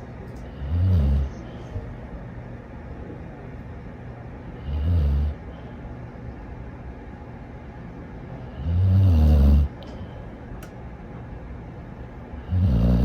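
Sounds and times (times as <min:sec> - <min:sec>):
dog snoring: 0:00.5 - 0:01.5, 0:04.6 - 0:05.4, 0:08.5 - 0:09.8, 0:12.4 - 0:13.0.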